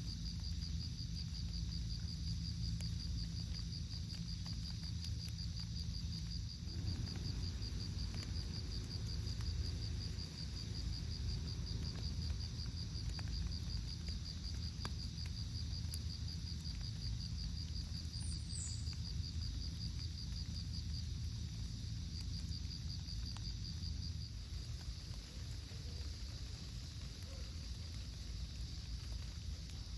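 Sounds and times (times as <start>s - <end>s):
insect chirping: 0.0s - 29.9s
low outdoor rumble: 0.0s - 29.9s.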